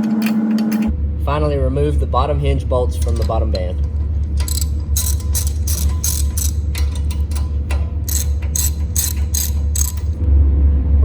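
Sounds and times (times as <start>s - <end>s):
ratchet wrench clicking: 3.0s - 10.2s.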